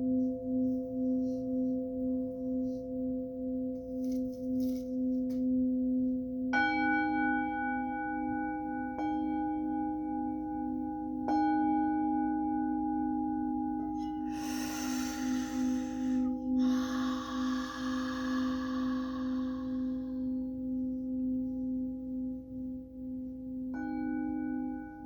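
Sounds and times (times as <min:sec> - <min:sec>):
low singing bowl tone: 0:05.6 - 0:25.0.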